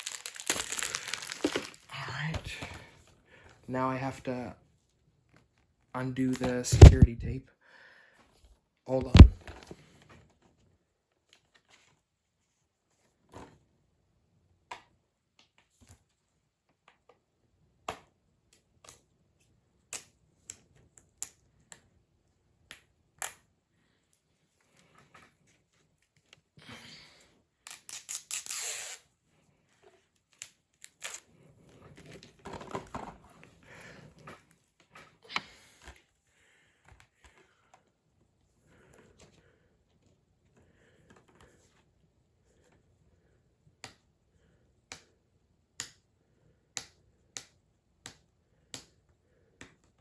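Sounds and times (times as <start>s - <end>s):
plastic case handling: 0.0s - 1.9s, 6.4s - 7.3s, 31.8s - 33.4s
tape peeling and scraping: 27.6s - 29.1s, 30.3s - 31.4s
fingernails scratching tape: 27.7s - 29.1s.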